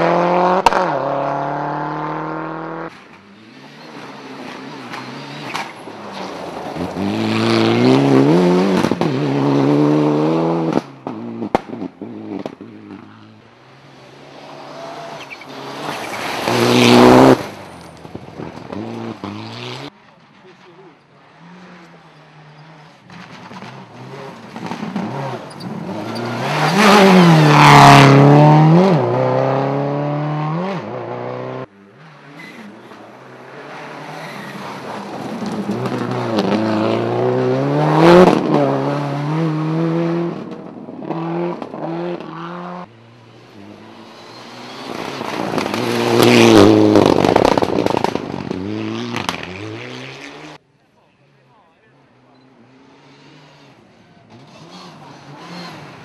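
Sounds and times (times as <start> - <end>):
rally car engine revving past: 0.0 - 13.4, 14.2 - 17.7, 21.4 - 50.6
sharp crack: 44.8 - 49.5.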